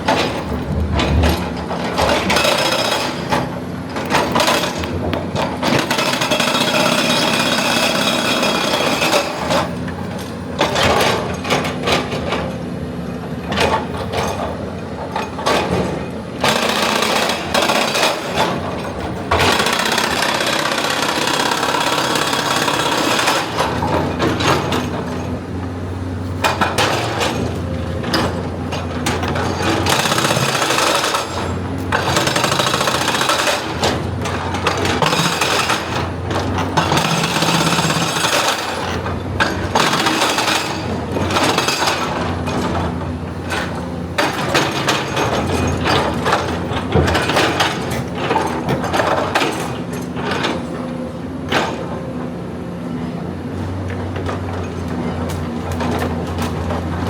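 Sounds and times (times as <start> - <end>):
hydraulic breaker hammering rock: 0.0 - 53.2.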